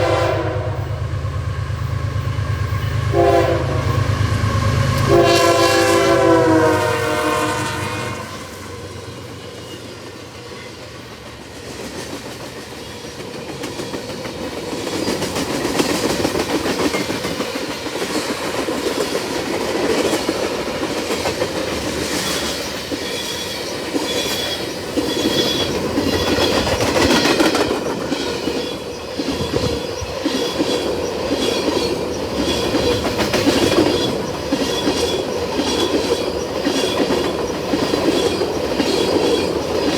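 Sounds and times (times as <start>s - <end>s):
train horn: 0.0s - 9.3s
train wheels clattering on rails: 8.4s - 39.9s.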